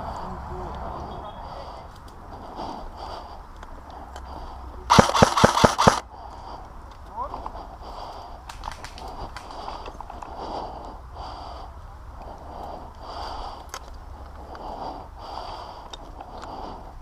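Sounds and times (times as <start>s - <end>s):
person breathing heavily: 0.0s - 17.0s.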